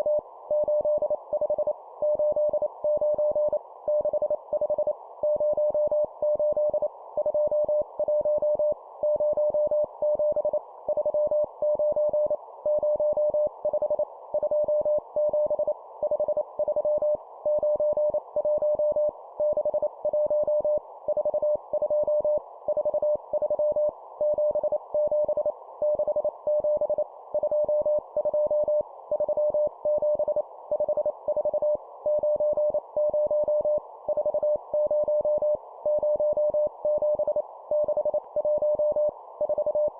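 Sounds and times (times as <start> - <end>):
morse code beeps: 16.2 - 39.9.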